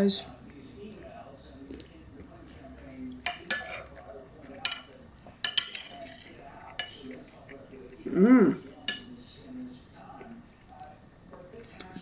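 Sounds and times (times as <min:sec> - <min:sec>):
spoon clinking against bowl: 0:03.2 - 0:07.9, 0:08.6 - 0:09.3.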